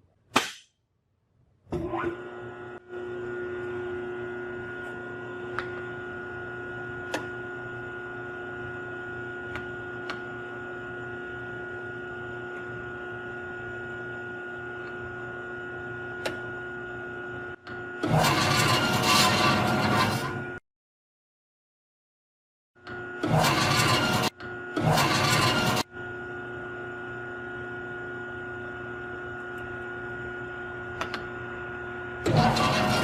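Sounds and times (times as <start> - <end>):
metal bandsaw humming: 18.0 - 20.5, 23.2 - 25.9, 32.2 - 33.0.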